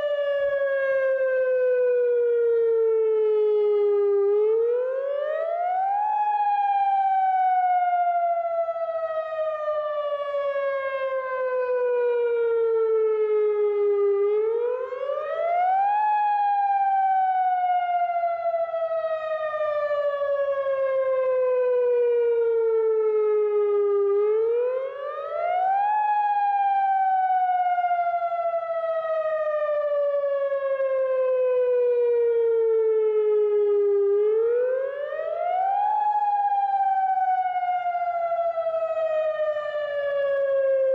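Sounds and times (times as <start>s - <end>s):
warning siren wailing: 0.0s - 40.9s.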